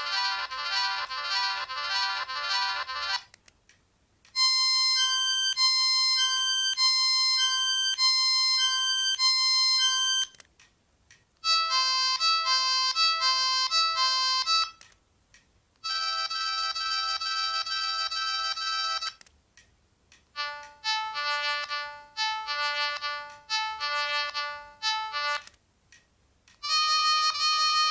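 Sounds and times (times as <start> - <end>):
electronic phone ringtone melodies: 0.0 - 3.2, 4.4 - 10.3, 11.5 - 14.7, 15.9 - 19.2, 20.4 - 25.4, 26.6 - 27.9.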